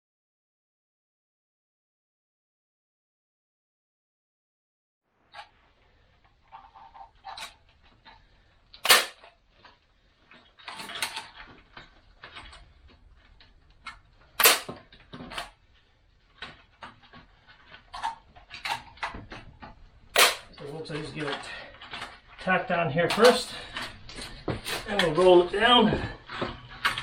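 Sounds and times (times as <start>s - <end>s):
wire rattling and clicking: 5.3s - 27.0s
staple gun snapping: 14.4s - 14.7s.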